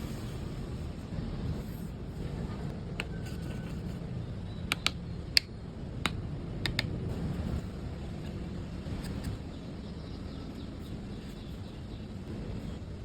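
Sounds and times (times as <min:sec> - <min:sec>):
steady low rumble: 0:00.0 - 0:13.0
sharp clicks and taps: 0:04.7 - 0:07.0.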